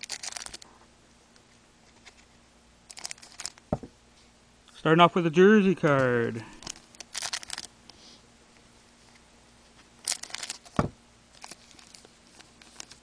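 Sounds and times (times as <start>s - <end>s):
foil wrapper crinkling and tearing: 0.0s - 0.7s, 2.9s - 3.6s, 6.6s - 7.7s, 10.0s - 13.0s
cards being handled clicks: 10.0s - 10.8s.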